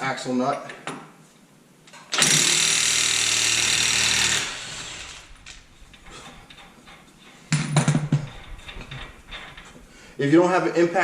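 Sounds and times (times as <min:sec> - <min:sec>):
impact wrench running: 0:02.1 - 0:05.6.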